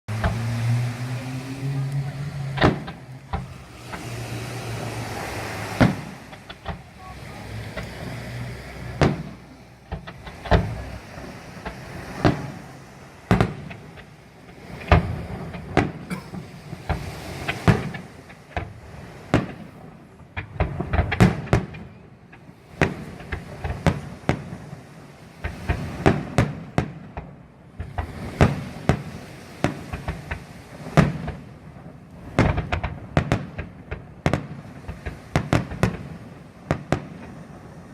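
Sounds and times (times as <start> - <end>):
fireworks bursting in bangs: 2.0 - 37.9.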